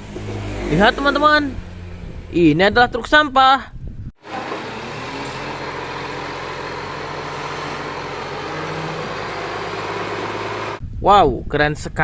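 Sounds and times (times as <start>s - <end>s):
truck engine idling: 4.2s - 10.8s.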